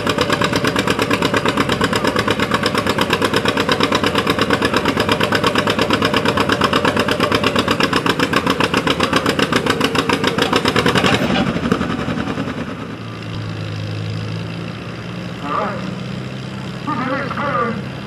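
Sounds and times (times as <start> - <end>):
tractor engine running hard: 0.0 - 18.0.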